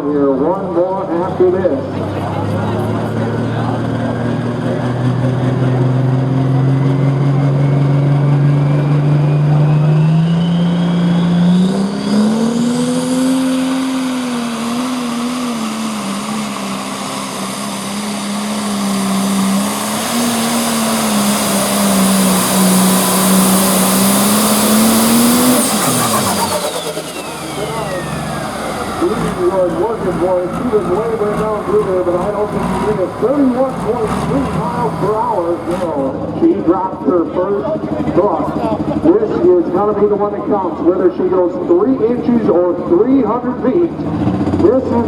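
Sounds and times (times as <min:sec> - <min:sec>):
diesel tractor engine under load: 0:00.0 - 0:45.0
turbo whine: 0:00.7 - 0:36.1.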